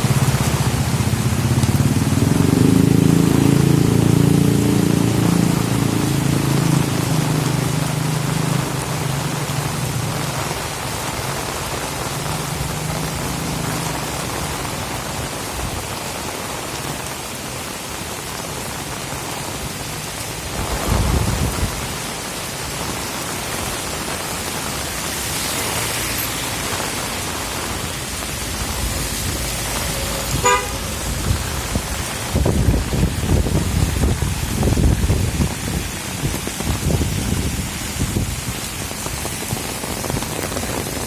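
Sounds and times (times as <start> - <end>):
heavy rain falling: 0.0 - 41.0
wind buffeting microphone: 20.5 - 22.0, 28.3 - 41.0
short pitched horn toot: 29.7 - 31.2.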